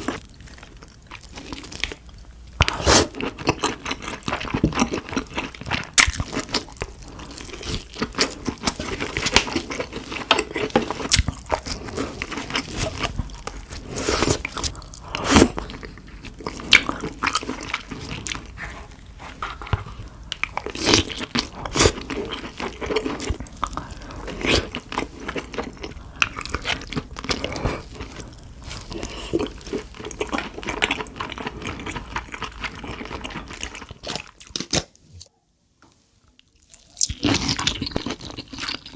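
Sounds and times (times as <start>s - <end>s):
crab shell crunching and cracking: 0.0s - 18.4s
chewing: 0.0s - 35.3s, 36.4s - 38.9s.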